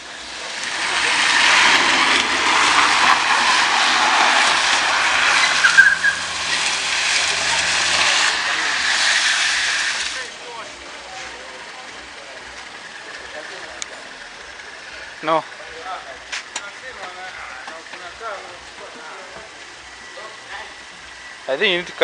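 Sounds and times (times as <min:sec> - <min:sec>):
ride skidding across pavement: 0:00.0 - 0:11.6.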